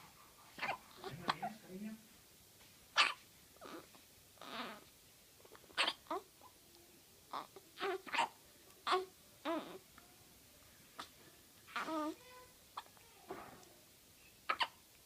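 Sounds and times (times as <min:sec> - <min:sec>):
babies hiccuping: 0:00.6 - 0:01.6, 0:02.9 - 0:06.3, 0:07.3 - 0:09.8, 0:11.0 - 0:12.2, 0:14.4 - 0:14.9.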